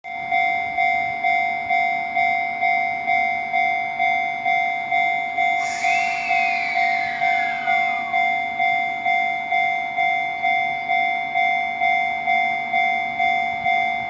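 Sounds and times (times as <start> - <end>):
train whistle: 5.6 - 9.7
warning bell ringing: 5.6 - 10.4.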